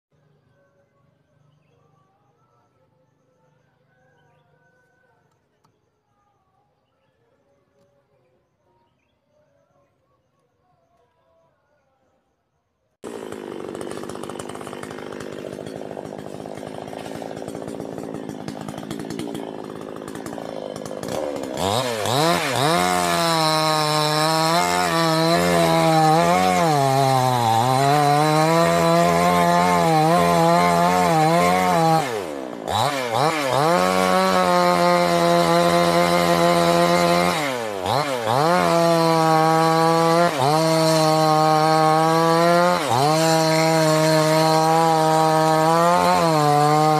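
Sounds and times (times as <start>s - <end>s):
chainsaw cutting into a tree: 13.0s - 46.9s.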